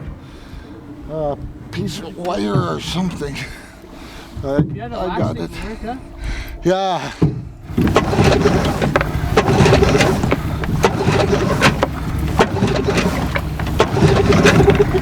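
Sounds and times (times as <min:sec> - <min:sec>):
outboard boat motor running: 0:00.0 - 0:06.4, 0:07.6 - 0:15.0
sharp clicks and knocks: 0:07.2 - 0:15.0.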